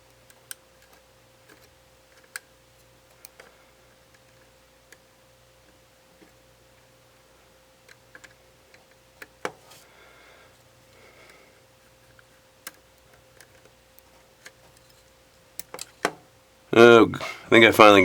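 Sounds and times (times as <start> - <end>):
faint steady hum: 0.0 - 18.0
small tools clicking and tapping: 12.1 - 16.2.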